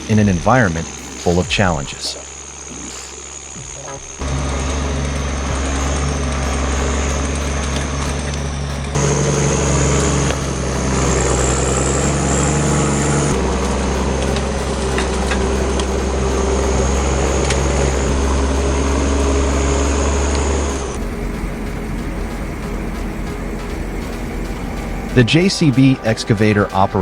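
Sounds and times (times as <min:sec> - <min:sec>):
high steady whine: 0:00.0 - 0:27.0
diesel engine running under load: 0:00.8 - 0:26.2.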